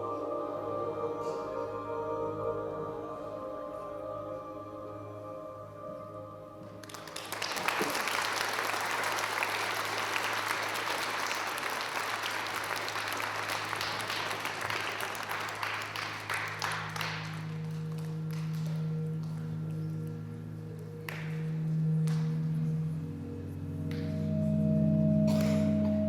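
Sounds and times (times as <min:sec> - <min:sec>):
music: 0:00.0 - 0:26.0
audience applauding: 0:06.8 - 0:19.4.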